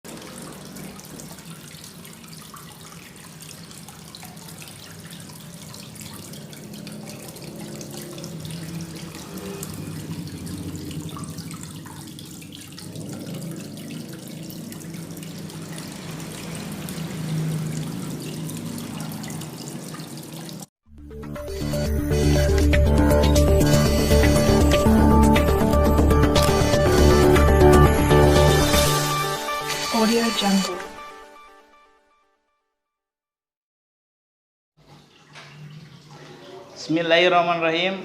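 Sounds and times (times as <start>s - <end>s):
water running and splashing: 0.0s - 20.7s, 34.8s - 37.4s.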